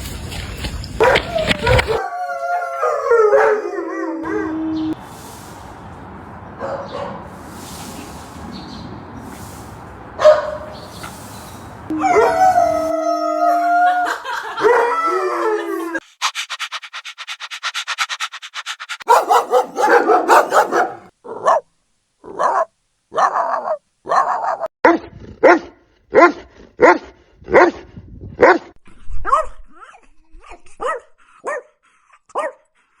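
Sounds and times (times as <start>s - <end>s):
dog barking: 1.0s - 1.4s, 6.6s - 7.4s, 10.2s - 10.8s, 18.6s - 21.6s, 22.3s - 27.8s, 28.4s - 28.7s, 30.8s - 32.7s
dog howling: 1.0s - 5.0s, 11.9s - 16.0s, 19.0s - 21.1s.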